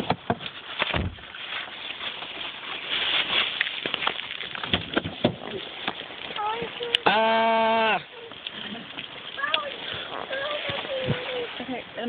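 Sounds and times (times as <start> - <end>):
hail pattering and crackling: 8.1 - 12.0.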